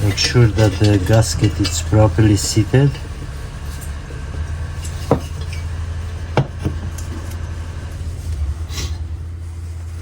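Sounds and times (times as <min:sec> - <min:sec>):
metal clinks and knocks: 0:00.0 - 0:05.8
steady low hum: 0:00.0 - 0:10.0.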